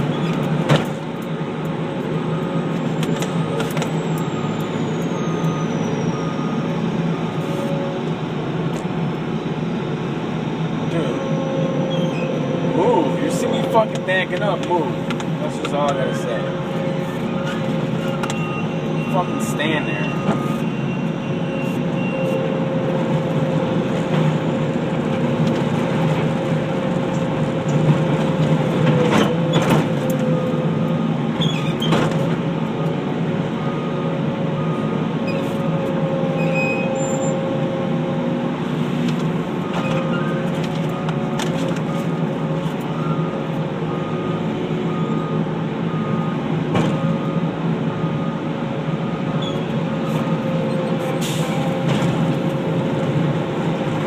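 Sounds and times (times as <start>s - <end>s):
loader engine running: 0.0s - 54.0s
backup alarm beeping: 15.6s - 22.9s, 42.9s - 51.8s.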